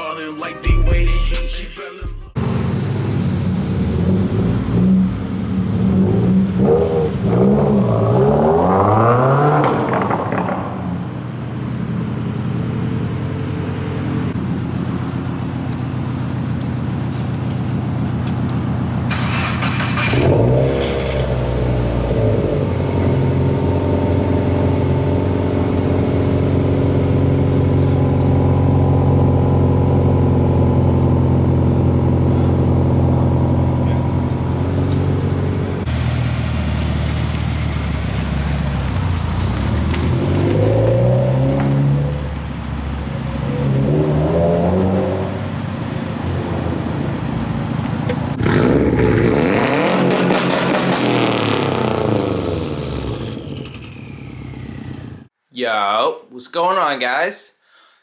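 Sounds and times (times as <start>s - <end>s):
car engine revving: 2.4s - 11.2s, 19.0s - 55.4s.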